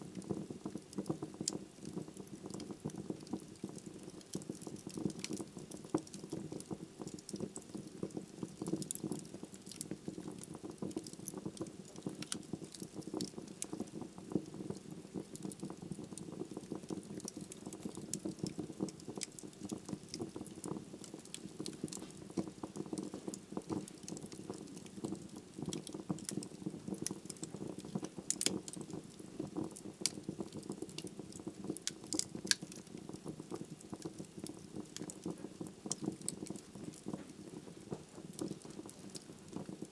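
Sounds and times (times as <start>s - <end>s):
low flame noise: 0.0s - 39.9s
wood fire crackling: 0.0s - 39.9s.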